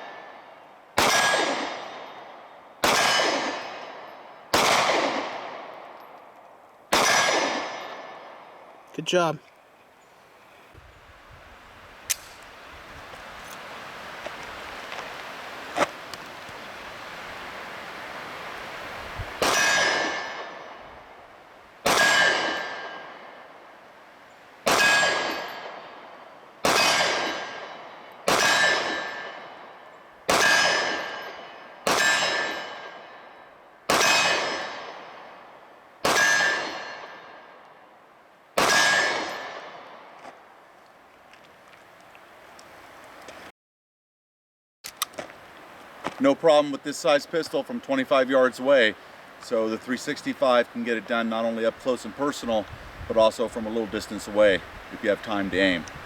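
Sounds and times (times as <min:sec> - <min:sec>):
pistol shots: 0:01.0 - 0:06.0, 0:06.9 - 0:08.6, 0:19.4 - 0:20.8, 0:21.8 - 0:23.5, 0:24.6 - 0:26.0, 0:26.6 - 0:37.5, 0:38.6 - 0:40.2
sharp click: 0:12.1 - 0:12.5, 0:44.8 - 0:45.3
steel target ringing: 0:24.7 - 0:26.0, 0:26.7 - 0:34.8, 0:36.1 - 0:37.4.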